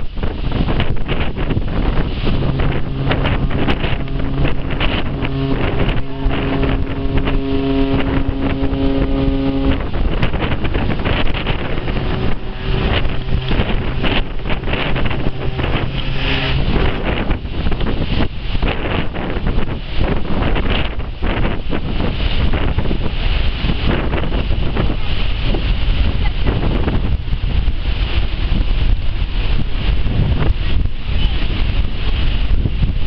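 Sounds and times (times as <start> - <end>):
wind buffeting microphone: 0.0 - 33.0
low ship horn blast: 0.1 - 27.2
high-pitched ship horn blast: 0.6 - 22.4.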